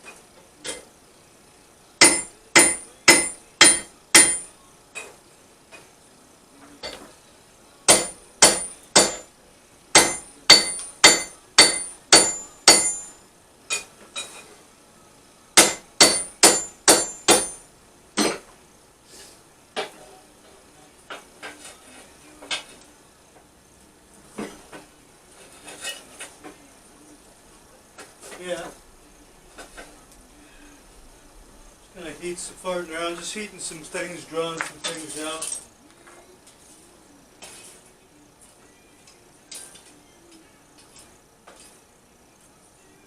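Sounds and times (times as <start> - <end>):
hammer striking steel on anvil: 2.0 - 5.1, 7.9 - 9.3, 9.9 - 13.9, 15.6 - 17.6.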